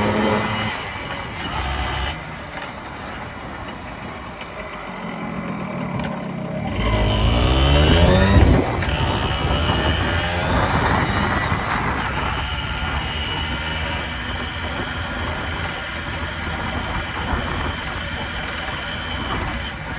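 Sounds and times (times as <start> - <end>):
motorcycle engine accelerating: 0.0 - 19.9.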